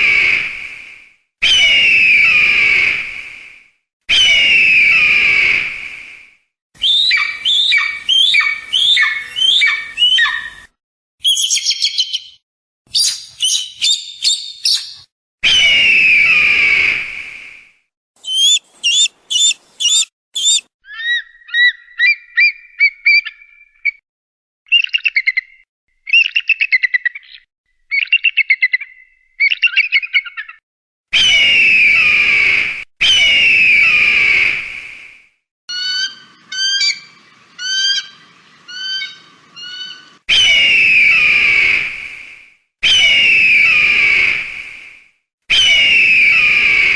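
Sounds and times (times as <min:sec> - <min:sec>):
eagle whistles and trills: 0:00.0 - 0:24.0, 0:31.2 - 0:46.9
eagle screams: 0:01.4 - 0:03.0, 0:04.1 - 0:05.7, 0:06.8 - 0:11.7, 0:15.4 - 0:17.0, 0:18.2 - 0:22.5, 0:31.1 - 0:34.6, 0:35.7 - 0:41.9, 0:42.8 - 0:44.4, 0:45.5 - 0:46.9.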